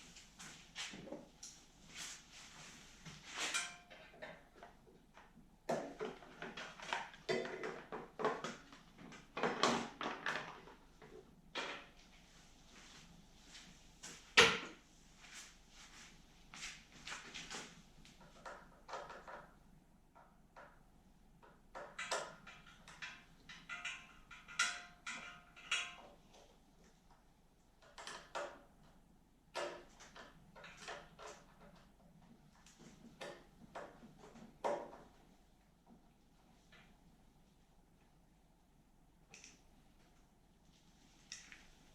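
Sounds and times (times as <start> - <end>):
tools clicking and clinking: 21.8 - 26.2.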